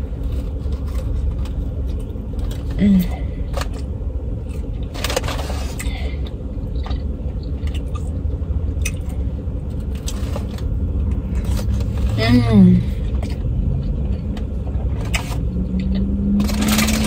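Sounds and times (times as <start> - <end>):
steady low rumble: 0.0 - 17.0
food container clicks and scrapes: 16.4 - 17.0.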